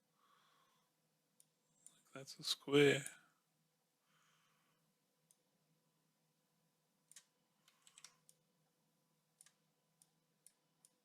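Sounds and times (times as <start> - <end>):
faint steady hum: 0.0 - 11.0
faint computer clicks: 7.1 - 8.4.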